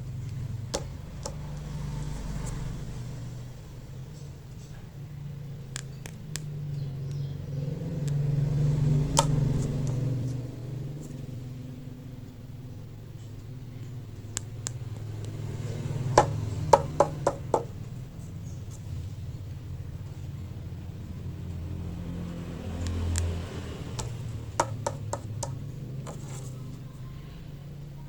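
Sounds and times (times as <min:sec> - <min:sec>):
plastic toys clicking and tapping: 0:00.7 - 0:01.6, 0:09.2 - 0:10.1, 0:24.0 - 0:26.8.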